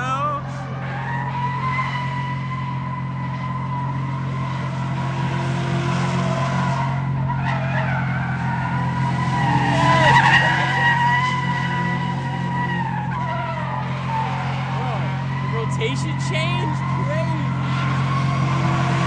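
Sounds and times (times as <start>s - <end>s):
car engine drone: 0.0s - 19.0s
tyres squealing: 7.8s - 19.0s.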